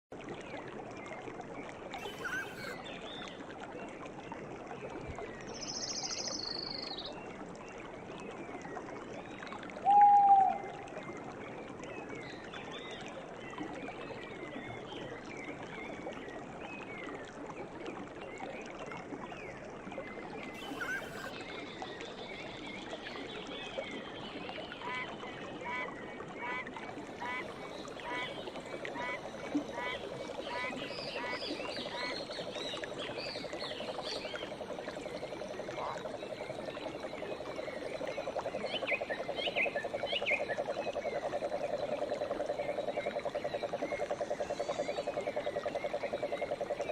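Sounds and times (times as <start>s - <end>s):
stream running: 0.1s - 46.9s
bird trilling: 2.0s - 2.8s, 20.6s - 21.3s
birds singing: 2.0s - 2.8s, 20.6s - 21.3s.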